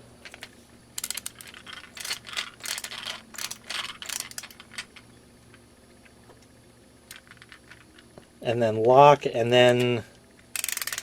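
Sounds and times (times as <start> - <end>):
ratcheting screwdriver clicking: 10.6 - 11.0.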